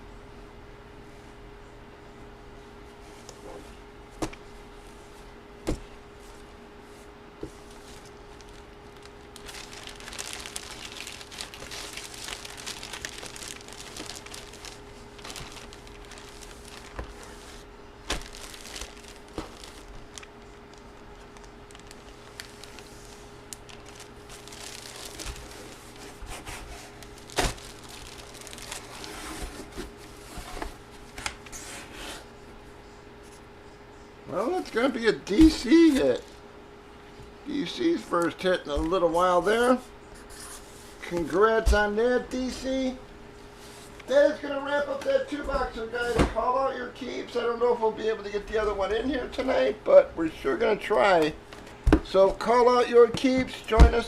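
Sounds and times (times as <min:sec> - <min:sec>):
faint steady hum: 0:00.0 - 0:54.0
plastic packaging crinkling and tearing: 0:07.6 - 0:29.8.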